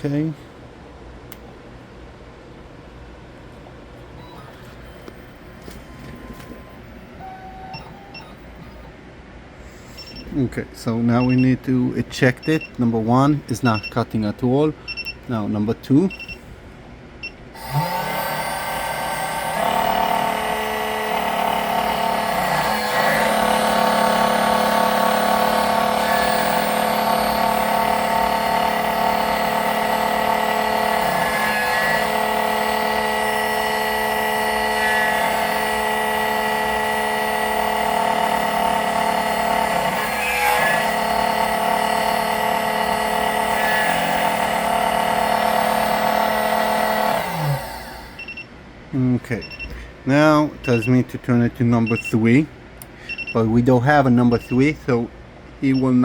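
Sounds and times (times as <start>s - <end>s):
key-cutting machine whining: 4.2s - 9.0s, 17.6s - 48.4s.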